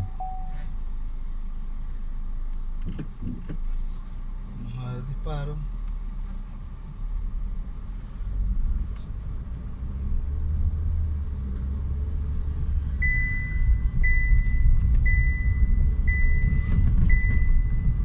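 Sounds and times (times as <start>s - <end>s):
dashboard warning chime: 0.0s - 0.8s, 13.0s - 18.0s
car engine rumbling: 0.0s - 18.0s.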